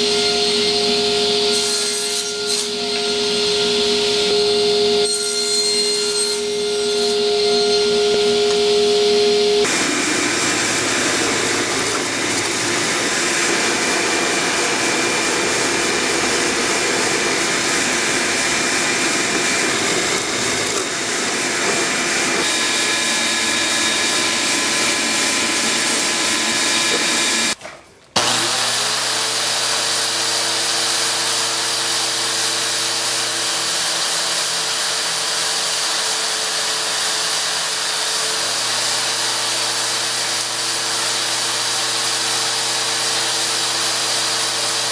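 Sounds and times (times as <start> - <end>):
motor whining and humming: 0.0 - 27.6
power tool on wood: 0.0 - 27.6, 28.2 - 44.9.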